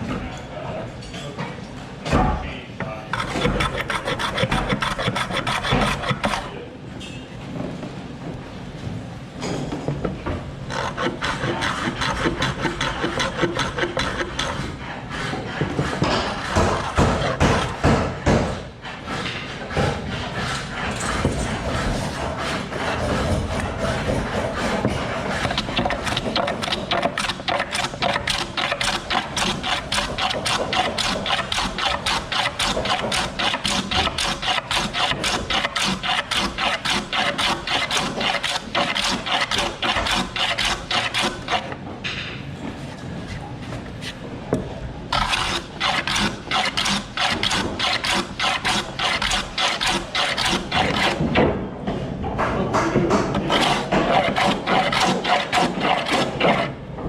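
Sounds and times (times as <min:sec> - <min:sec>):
hand tool cutting wood: 0:03.2 - 0:06.5, 0:10.7 - 0:18.5, 0:19.7 - 0:41.8, 0:45.1 - 0:51.4, 0:53.1 - 0:56.8.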